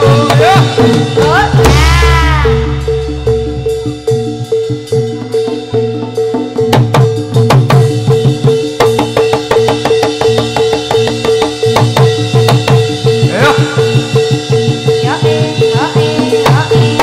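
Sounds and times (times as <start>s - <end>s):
fast drumming: 0.0s - 17.0s
struck percussion: 0.0s - 17.0s
steady held tone: 0.8s - 6.6s.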